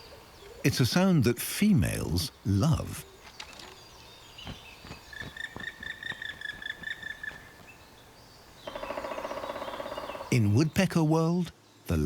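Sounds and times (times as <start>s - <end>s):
bird high pulsed call: 8.6s - 10.3s.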